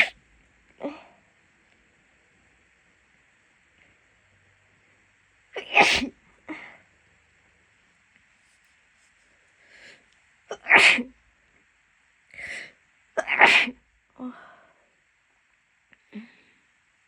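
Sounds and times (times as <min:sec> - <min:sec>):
woman sneezing: 0:05.6 - 0:06.7, 0:10.5 - 0:11.1, 0:13.2 - 0:13.8
breathing in: 0:09.6 - 0:10.1, 0:12.3 - 0:12.8, 0:14.3 - 0:14.9.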